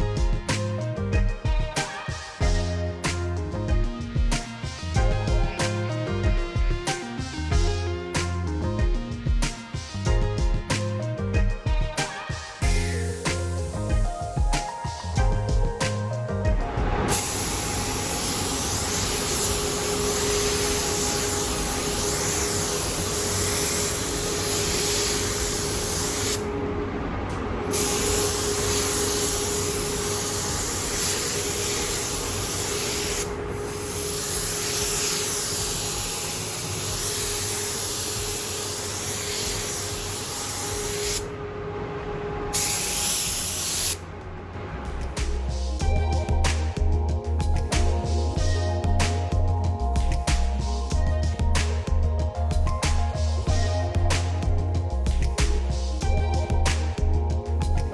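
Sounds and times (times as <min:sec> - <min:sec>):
paint spray gun hissing: 0:17.1 - 0:26.5, 0:27.7 - 0:41.3, 0:42.5 - 0:44.0.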